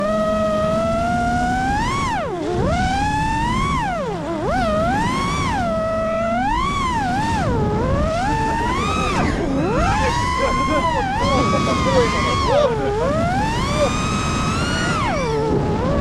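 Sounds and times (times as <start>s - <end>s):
low rumbling noise: 0.0s - 16.0s
quadcopter motors whining: 0.0s - 16.0s.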